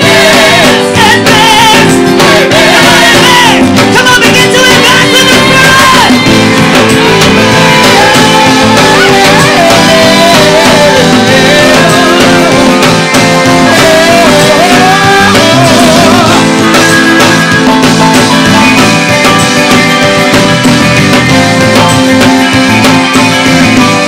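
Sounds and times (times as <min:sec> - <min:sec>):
voices singing: 0:00.0 - 0:17.2
guitar: 0:00.0 - 0:24.0
worship band playing: 0:00.0 - 0:24.0.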